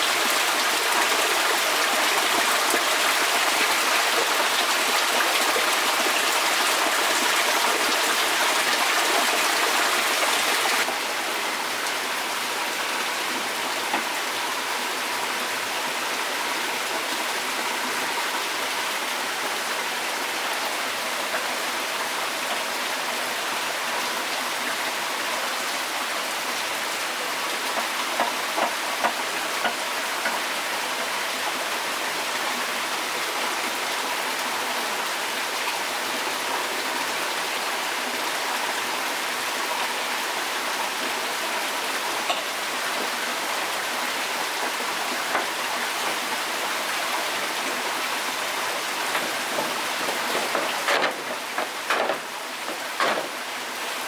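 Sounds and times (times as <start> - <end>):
sharp knocks: 49.1 - 53.4.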